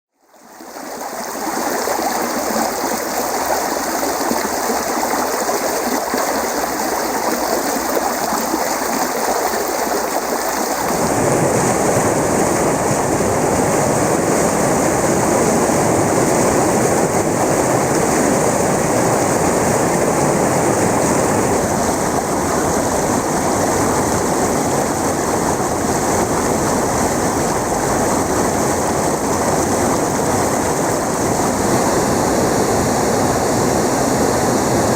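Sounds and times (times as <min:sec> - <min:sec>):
water stream flowing: 0:00.1 - 0:34.9.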